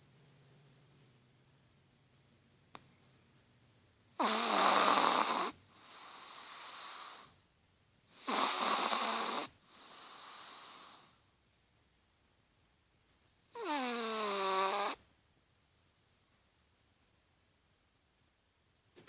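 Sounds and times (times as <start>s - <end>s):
dog snoring: 4.2s - 7.3s, 8.1s - 11.2s, 13.5s - 15.0s.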